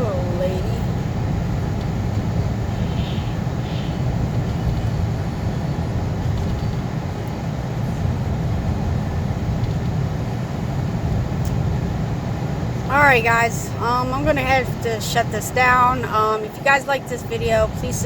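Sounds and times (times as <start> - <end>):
road noise: 0.0 - 18.0
vehicle engine rumble: 0.0 - 18.0.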